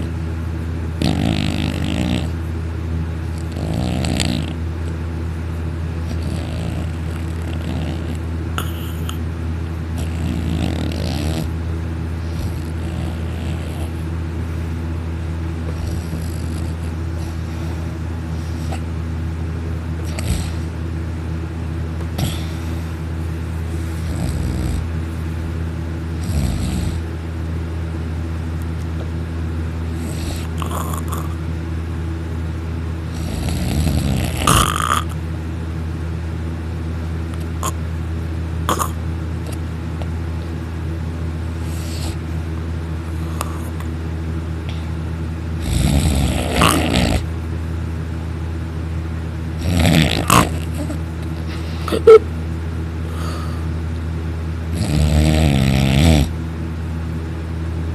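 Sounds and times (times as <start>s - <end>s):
steady low hum: 0.0s - 57.9s
man snoring loudly: 1.0s - 2.4s, 3.3s - 4.6s, 6.0s - 9.2s, 10.0s - 11.6s, 12.2s - 14.0s, 15.7s - 17.5s, 20.0s - 20.7s, 24.0s - 24.9s, 26.2s - 27.0s, 29.9s - 31.4s, 33.1s - 35.2s, 38.7s - 39.0s, 45.6s - 47.3s, 49.6s - 51.0s, 54.7s - 56.4s.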